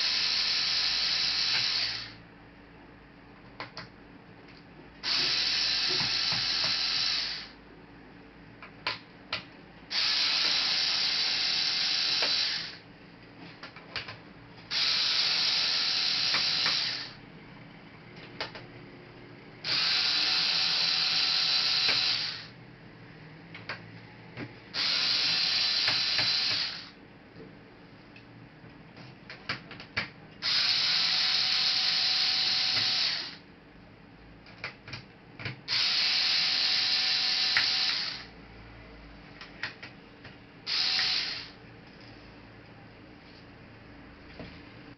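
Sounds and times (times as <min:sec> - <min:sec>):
electric screwdriver whirring: 0:00.0 - 0:02.2, 0:05.0 - 0:07.5, 0:09.9 - 0:12.8, 0:14.7 - 0:17.2, 0:19.6 - 0:22.5, 0:24.8 - 0:27.0, 0:30.4 - 0:33.4, 0:35.7 - 0:38.3, 0:40.7 - 0:41.6.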